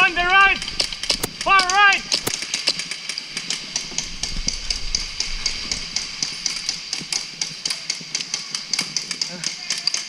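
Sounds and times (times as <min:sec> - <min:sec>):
airsoft gun shots: 0:00.6 - 0:03.0.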